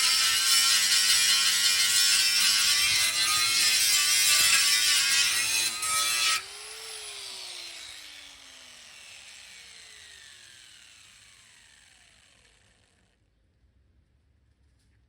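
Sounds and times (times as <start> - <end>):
electric grinder on sheet steel: 0.0 - 13.1
grinder motor whine spinning down: 6.4 - 13.2.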